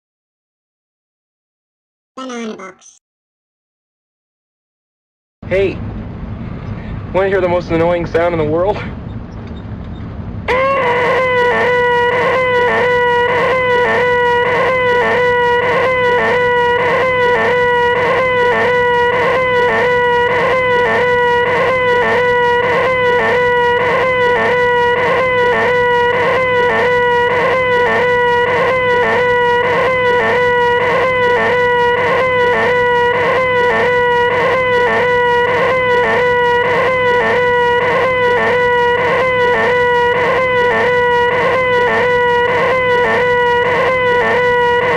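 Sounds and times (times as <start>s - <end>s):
man yelling shrill nasal eeeeh: 10.5s - 44.9s.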